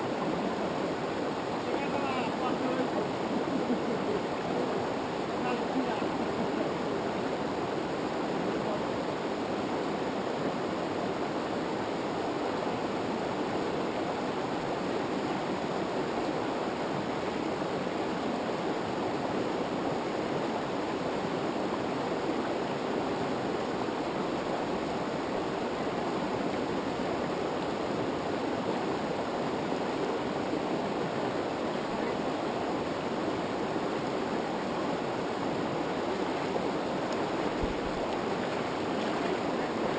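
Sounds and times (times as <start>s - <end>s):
river water rushing over rapids: 0.0s - 39.9s.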